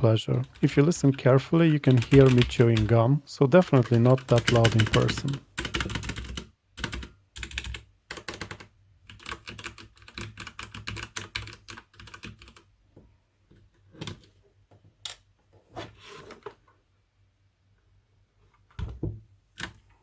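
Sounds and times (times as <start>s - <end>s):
mechanical keyboard typing: 1.8s - 2.9s, 3.7s - 12.7s.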